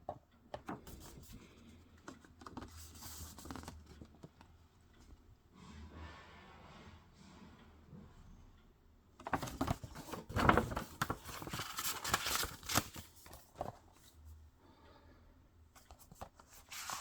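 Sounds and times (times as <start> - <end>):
packaging rustling and crinkling: 9.3 - 13.8.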